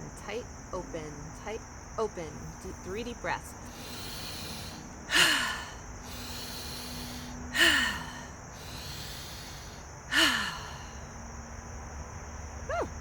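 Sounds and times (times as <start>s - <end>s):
woman breathing deeply: 3.6s - 11.3s.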